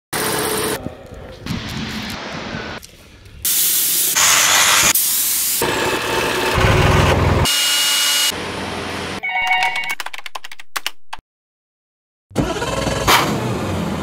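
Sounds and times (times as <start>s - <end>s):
rushing hissing spray: 3.4s - 5.6s.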